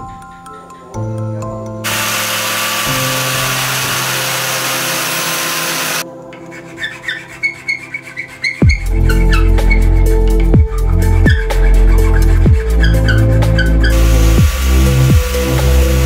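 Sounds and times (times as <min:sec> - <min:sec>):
background music: 0:00.0 - 0:16.0
power tool abrading steel: 0:01.9 - 0:06.0, 0:12.8 - 0:16.0.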